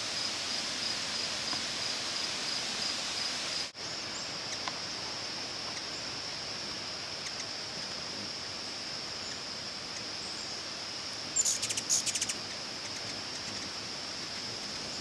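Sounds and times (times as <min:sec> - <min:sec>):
hummingbird chattering chips: 0:11.4 - 0:14.5.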